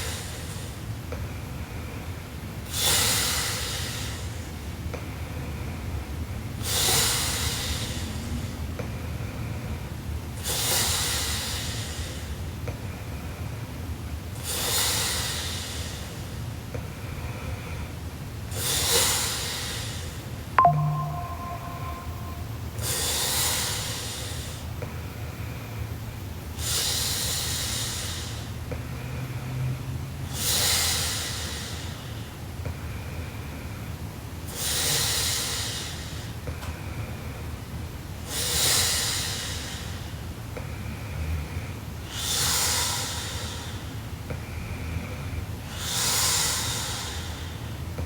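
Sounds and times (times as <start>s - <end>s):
loud hissing breaths: 45.7s - 47.8s.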